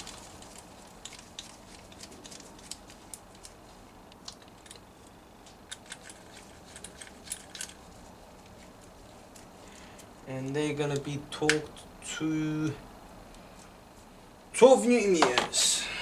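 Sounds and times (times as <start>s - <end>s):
bolts clicking while threaded in: 0.5s - 7.8s.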